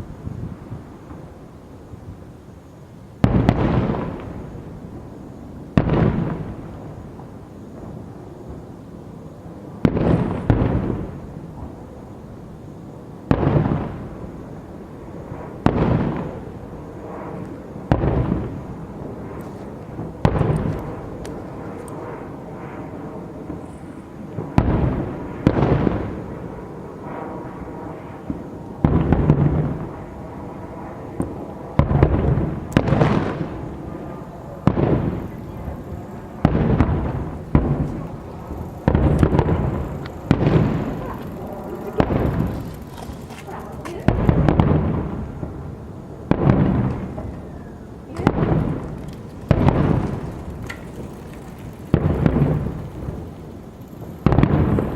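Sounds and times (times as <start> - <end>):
fireworks booming: 3.2 - 54.9.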